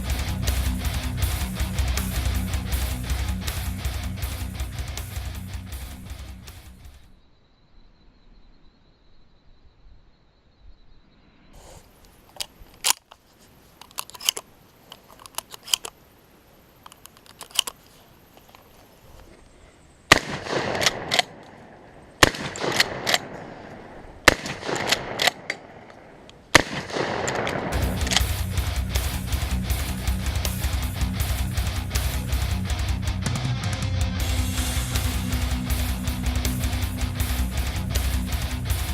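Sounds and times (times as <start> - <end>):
gun handling clicks and clacks: 12.0 - 16.0, 16.8 - 19.4, 20.1 - 28.4
shotgun shots: 20.1 - 28.4.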